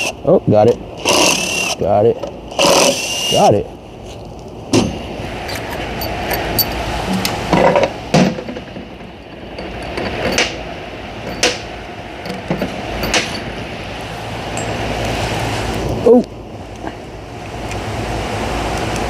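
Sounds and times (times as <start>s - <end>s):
steady background noise: 0.0s - 19.0s
metal parts clanking: 4.8s - 10.6s, 11.2s - 13.6s.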